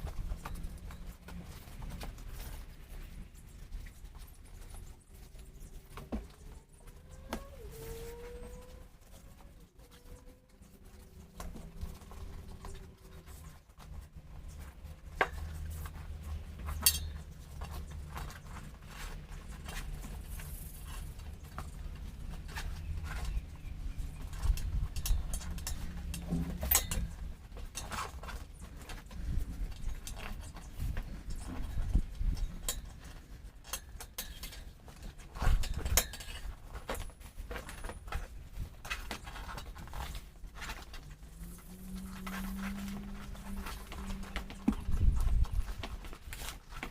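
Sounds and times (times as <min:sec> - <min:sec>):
metal tools clinking: 0:16.6 - 0:17.7
metal tools clinking and knocking: 0:16.6 - 0:18.3, 0:24.3 - 0:28.3
low hum: 0:40.7 - 0:46.1.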